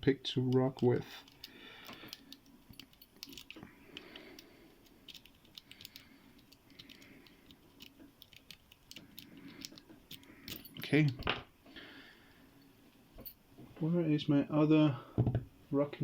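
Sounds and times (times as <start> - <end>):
lock pick clicking and scraping: 1.2 - 11.2.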